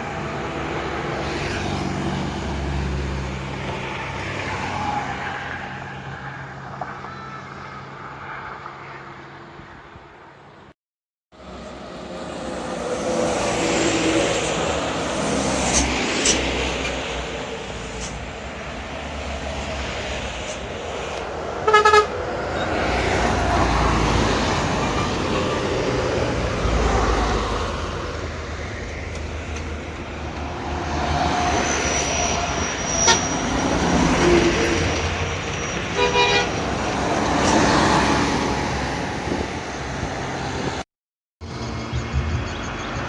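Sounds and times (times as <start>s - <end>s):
diesel buses grinding uphill: 0.0s - 10.8s, 11.4s - 43.0s
bus horn blast: 21.6s - 22.7s, 35.9s - 36.8s.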